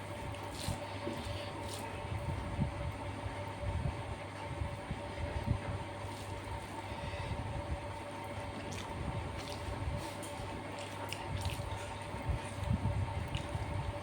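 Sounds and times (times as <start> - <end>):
steady low hum: 0.0 - 14.0
chewing: 8.6 - 13.8.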